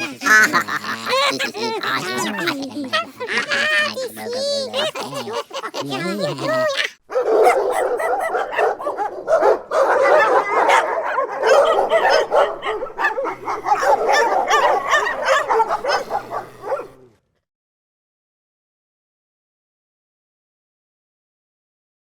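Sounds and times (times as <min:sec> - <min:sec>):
dogs barking and whining: 0:00.0 - 0:17.2.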